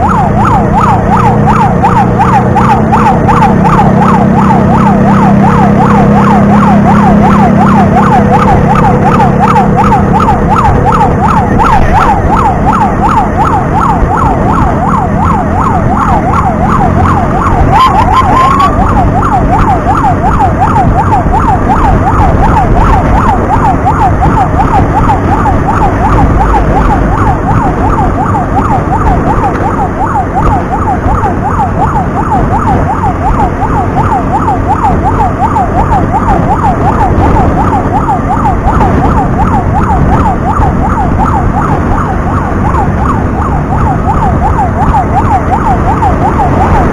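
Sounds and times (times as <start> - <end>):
emergency siren yelp: 0.0 - 46.9
vehicle engine and road noise: 0.0 - 46.9
short siren chirp: 14.9 - 20.2.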